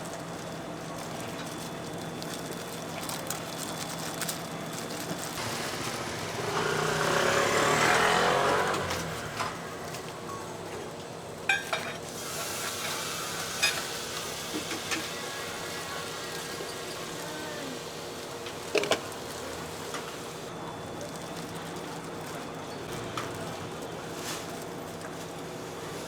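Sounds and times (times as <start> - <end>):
egg sizzling in a pan: 12.1 - 20.5
metal utensils clinking: 18.6 - 20.1.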